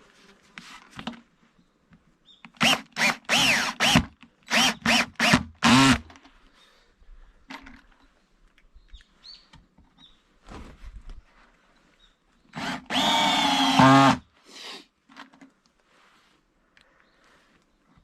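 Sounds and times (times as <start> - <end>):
power drill running: 2.6 - 6.0, 12.6 - 14.2.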